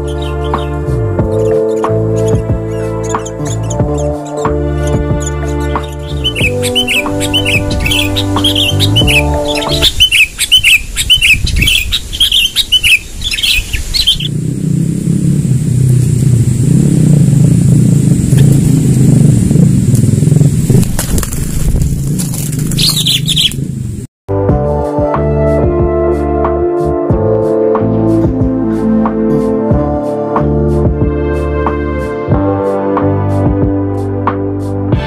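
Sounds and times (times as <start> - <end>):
loud rough rushing noise: 0.0 - 10.1, 13.5 - 24.1
music: 0.0 - 10.2, 24.3 - 35.0
bird chirping: 0.0 - 14.3, 22.6 - 23.7.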